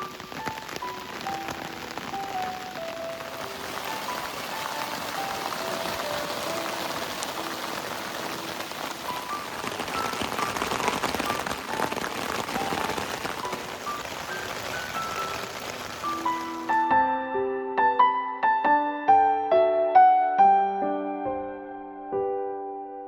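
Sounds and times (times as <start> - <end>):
heavy rain: 0.0 - 16.9
slow background music melody: 0.0 - 23.0.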